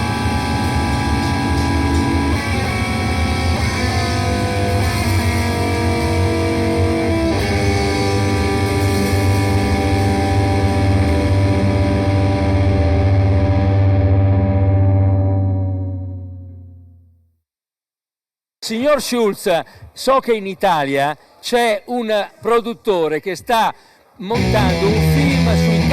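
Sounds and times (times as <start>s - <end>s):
heavy low drone: 0.0s - 17.0s, 24.4s - 25.9s
distorted electric guitar and bass: 0.0s - 17.2s, 24.4s - 25.9s.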